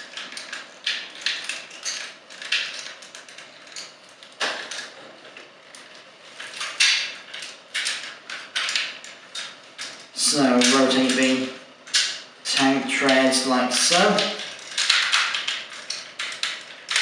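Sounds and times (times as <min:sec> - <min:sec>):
plastic toy parts clicking: 0:13.9 - 0:17.0.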